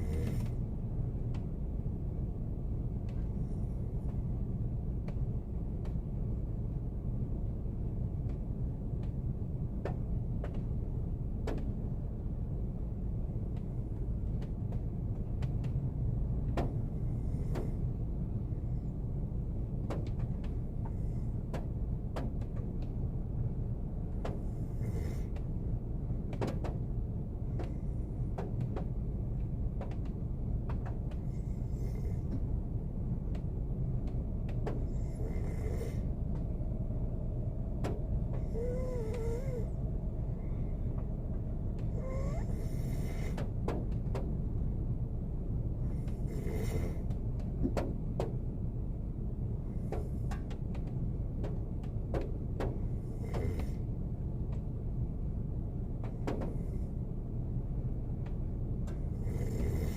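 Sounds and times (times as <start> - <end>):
car steady low hum: 0.0 - 59.9.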